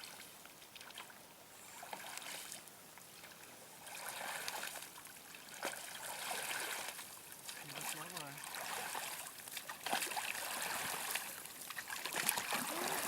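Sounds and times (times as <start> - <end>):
water splashing around boat: 0.0 - 13.0.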